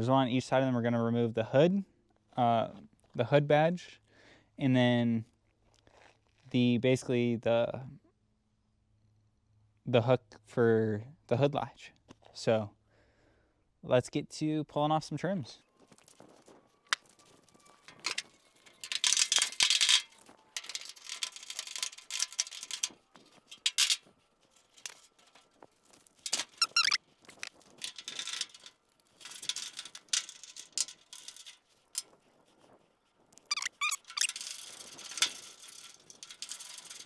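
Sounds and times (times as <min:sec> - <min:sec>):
metal scraping: 0:17.0 - 0:32.1, 0:33.4 - 0:37.0
short squeaks: 0:26.3 - 0:28.4, 0:33.4 - 0:36.5.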